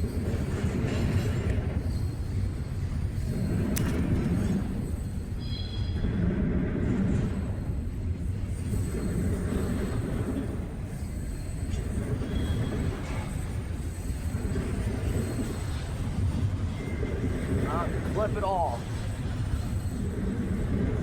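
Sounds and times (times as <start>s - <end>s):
train wheels rumbling on rails: 0.0s - 21.0s
high wheel squeals: 7.5s - 18.0s.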